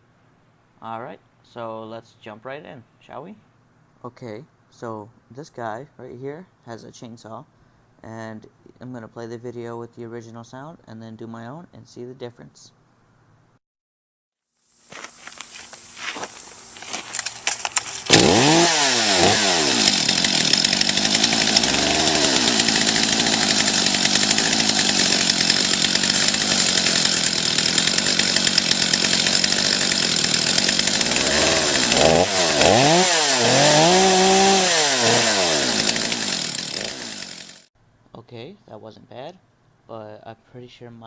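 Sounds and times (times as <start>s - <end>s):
chainsaw engine revving: 17.0s - 37.7s.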